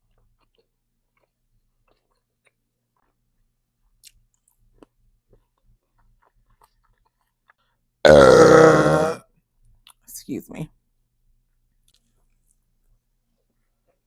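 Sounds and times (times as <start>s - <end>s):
close-up chewing: 0.0s - 8.1s, 11.5s - 14.0s.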